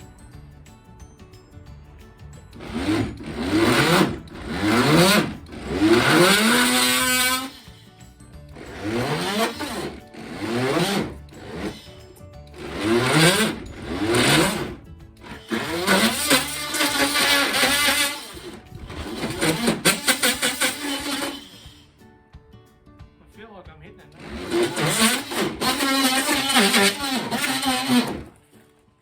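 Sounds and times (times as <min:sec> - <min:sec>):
multi-tool cutting timber: 0:02.6 - 0:07.8, 0:08.5 - 0:21.9, 0:24.2 - 0:28.4.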